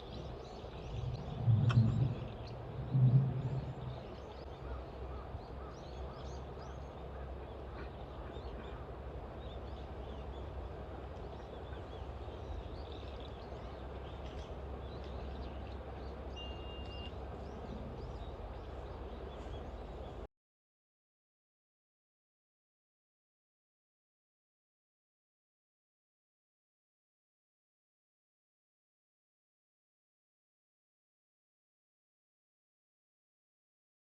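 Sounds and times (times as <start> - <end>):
birds chirping: 0.0 - 20.3
low rumble: 0.7 - 4.7.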